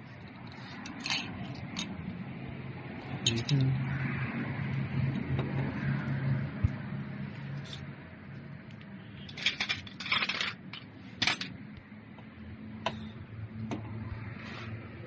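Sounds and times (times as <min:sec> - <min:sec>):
metal tools rattling: 0:00.9 - 0:01.9, 0:09.3 - 0:11.5.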